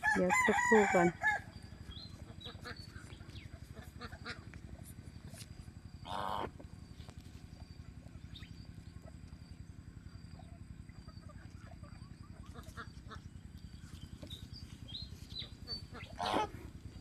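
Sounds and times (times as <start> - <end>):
low background rumble: 0.0 - 17.0
duck honking: 6.1 - 6.5, 15.7 - 16.7.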